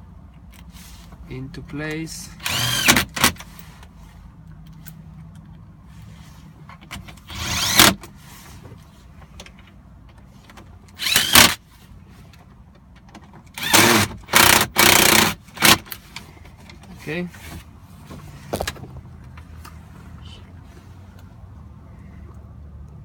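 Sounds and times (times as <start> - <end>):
cordless drill motor whining: 2.4 - 3.0, 7.3 - 7.9, 11.0 - 11.5, 13.6 - 15.7.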